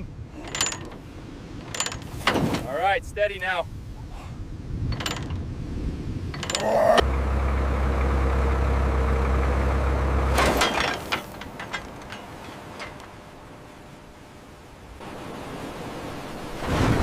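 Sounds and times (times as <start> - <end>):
metallic clatter: 0.4 - 2.7, 4.9 - 5.5, 6.3 - 13.6
heavy vehicle engine droning: 6.5 - 13.4.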